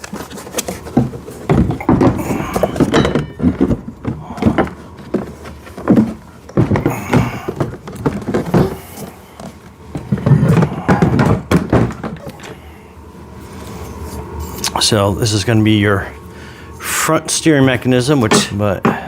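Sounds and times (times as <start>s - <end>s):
plastic parts knocking and clattering: 0.0s - 12.5s
rustling: 0.0s - 16.9s.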